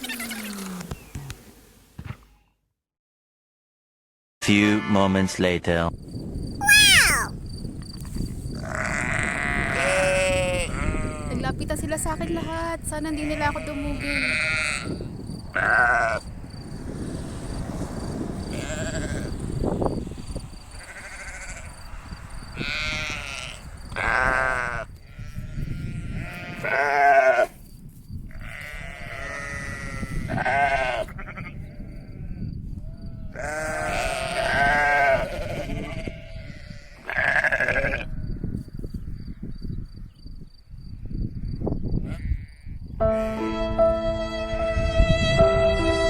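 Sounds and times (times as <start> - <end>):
livestock bleating: 8.6 - 11.5, 12.1 - 16.2, 18.5 - 19.3, 20.8 - 21.7, 22.6 - 27.6, 28.4 - 32.4, 33.1 - 38.2, 42.0 - 44.0.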